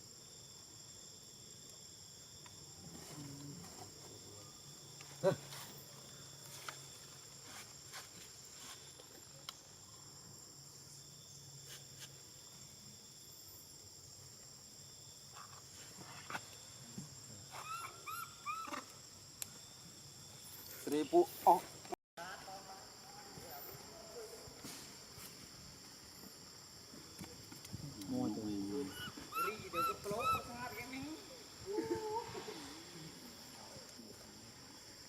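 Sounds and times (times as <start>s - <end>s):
insects droning: 0.0s - 35.0s
baby monkey high-pitched calls: 17.6s - 18.8s, 28.9s - 30.5s.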